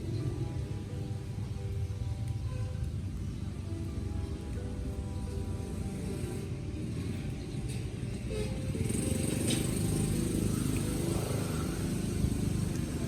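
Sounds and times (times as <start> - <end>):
small engine running: 5.8 - 13.0.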